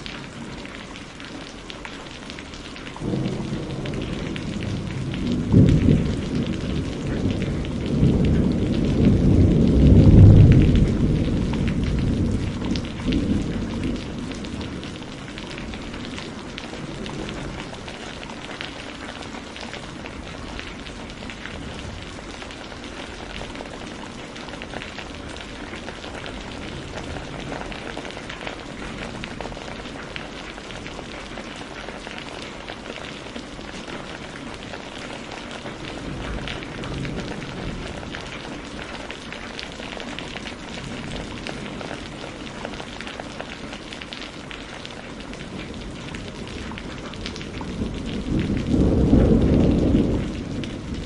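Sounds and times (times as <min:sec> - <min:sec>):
rain falling: 0:00.0 - 0:51.0
thunder rumble: 0:03.0 - 0:31.0, 0:35.7 - 0:39.0, 0:45.3 - 0:51.0.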